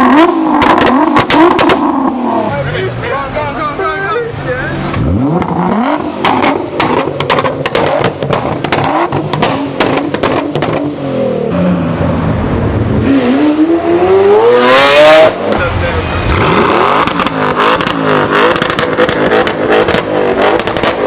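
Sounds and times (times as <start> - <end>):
sports car engine revving: 0.0 - 21.0
exhaust pops and crackles: 0.4 - 2.0, 6.2 - 10.9, 15.5 - 21.0.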